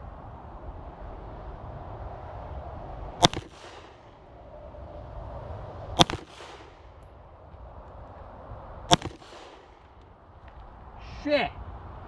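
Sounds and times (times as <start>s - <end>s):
pistol shots with echo: 3.2s - 4.2s, 6.0s - 7.0s, 8.9s - 10.0s.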